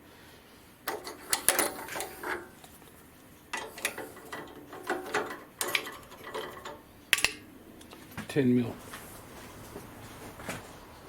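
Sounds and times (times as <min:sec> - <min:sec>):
metal tools clicking and rattling: 0:00.9 - 0:02.8, 0:03.5 - 0:08.0.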